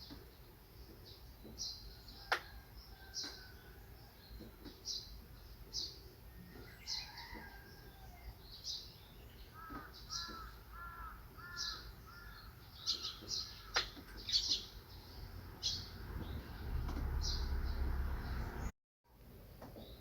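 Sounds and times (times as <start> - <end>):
bird chirping: 0.0 - 18.7
crow-like calls: 9.5 - 14.0.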